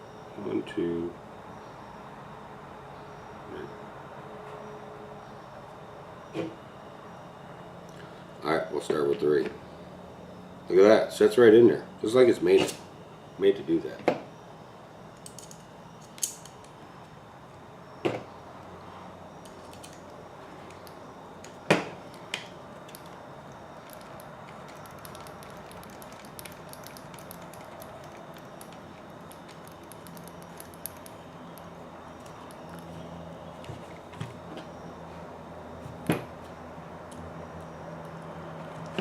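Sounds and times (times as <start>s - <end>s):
sharp clicks of small tools: 15.2s - 16.8s, 19.4s - 23.2s, 23.8s - 32.9s
light ticks of parts: 19.4s - 33.7s.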